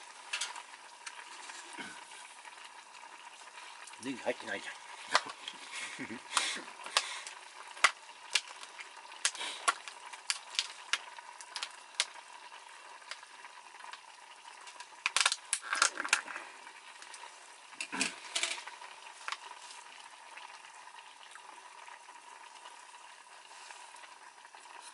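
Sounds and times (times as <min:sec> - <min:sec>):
hot pot sizzling: 0:00.0 - 0:24.9
utensils clicking on a pot: 0:00.2 - 0:01.8, 0:06.2 - 0:12.3, 0:12.9 - 0:16.4, 0:17.0 - 0:19.5.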